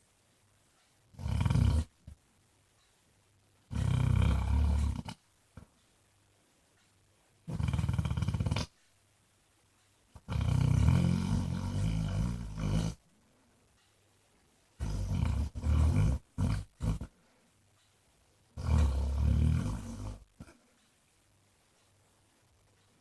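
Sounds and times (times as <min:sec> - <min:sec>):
dog snoring loudly: 0:01.1 - 0:02.0, 0:03.7 - 0:05.2, 0:07.5 - 0:08.7, 0:10.2 - 0:13.0, 0:14.8 - 0:17.1, 0:18.6 - 0:20.3.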